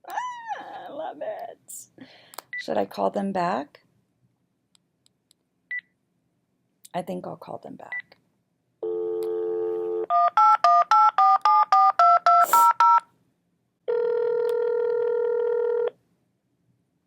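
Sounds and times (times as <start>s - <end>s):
telephone dial tone: 8.8s - 13.0s, 13.9s - 15.9s
telephone ringback tone: 8.8s - 13.0s, 13.9s - 15.9s.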